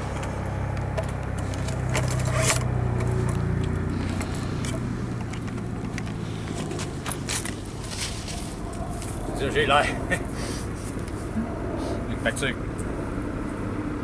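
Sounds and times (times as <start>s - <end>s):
low engine hum: 0.0s - 14.0s
rustling and scraping handling noises: 1.0s - 12.0s.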